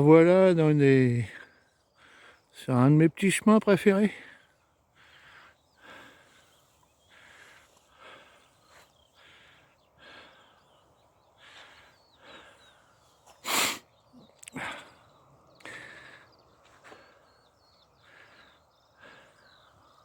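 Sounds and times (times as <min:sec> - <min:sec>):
faint bird chirps: 0:01.3 - 0:03.4, 0:04.2 - 0:20.0
person breathing: 0:04.3 - 0:10.8, 0:11.4 - 0:13.8, 0:14.4 - 0:17.4, 0:18.0 - 0:20.0
person sniffing: 0:13.4 - 0:13.9
footsteps on sandy path: 0:15.6 - 0:18.4.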